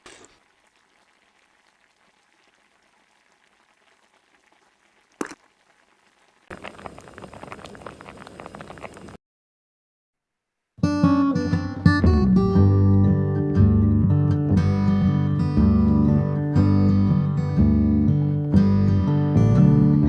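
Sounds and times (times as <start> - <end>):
food bubbling and crackling: 0.0 - 9.2.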